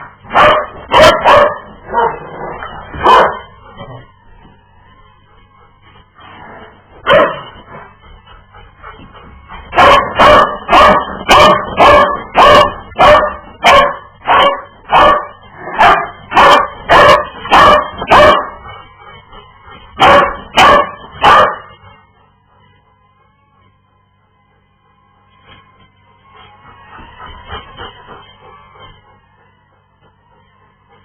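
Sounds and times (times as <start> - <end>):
dog barking: 0.3 - 2.3, 3.0 - 3.5, 7.0 - 7.5, 9.7 - 18.6, 20.0 - 21.8.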